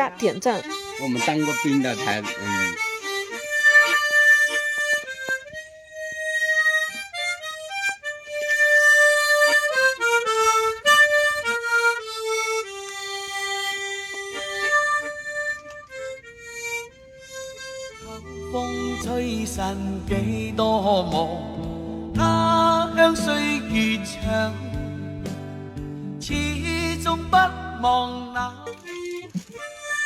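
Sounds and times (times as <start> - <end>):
harmonica playing slow melody: 0.0 - 30.0.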